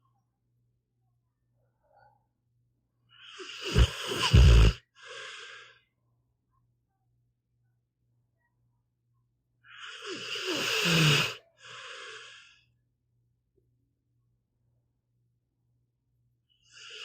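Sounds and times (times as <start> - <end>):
dog snoring: 3.4 - 4.8, 9.8 - 11.4.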